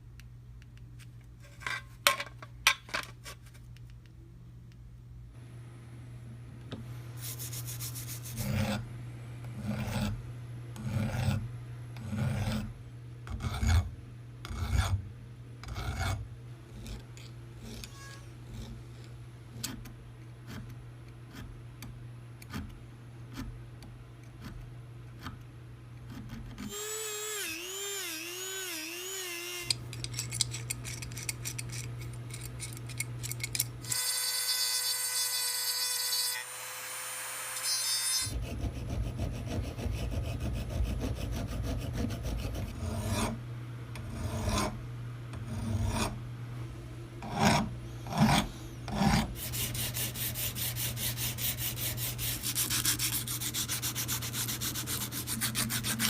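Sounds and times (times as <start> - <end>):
hand file rasping on metal: 38.2 - 43.4, 47.2 - 56.0.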